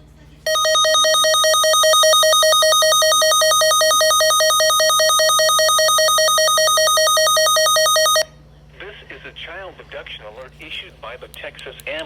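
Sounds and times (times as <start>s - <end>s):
warbling electronic alert tone: 0.5s - 8.3s.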